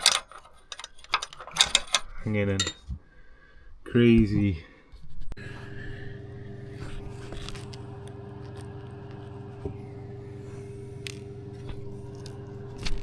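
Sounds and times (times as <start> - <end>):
small parts clicking and scraping: 0.0 - 2.9
steady low hum: 5.2 - 13.0.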